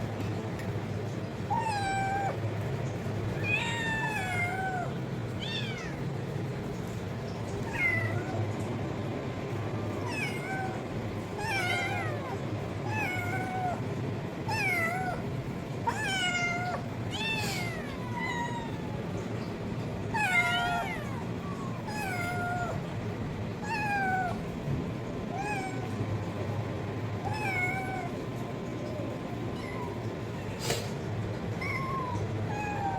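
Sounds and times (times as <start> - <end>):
cat meowing: 1.5 - 2.4, 3.4 - 6.1, 7.6 - 8.4, 10.0 - 13.8, 14.5 - 19.3, 20.1 - 22.9, 23.6 - 24.5, 25.3 - 26.0, 27.2 - 30.9, 31.5 - 32.9.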